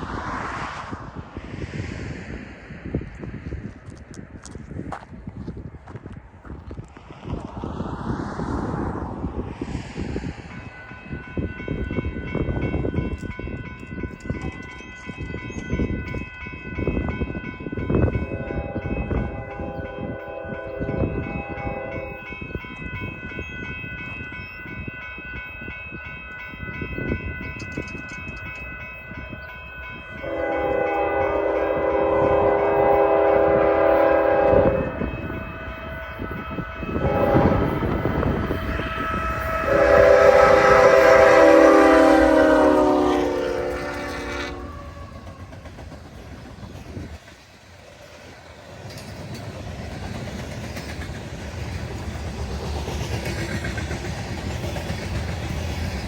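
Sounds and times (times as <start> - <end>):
train rumbling: 0.0 - 56.0
train air horn: 18.3 - 22.2, 30.1 - 45.5
lower horn tones: 30.1 - 45.3.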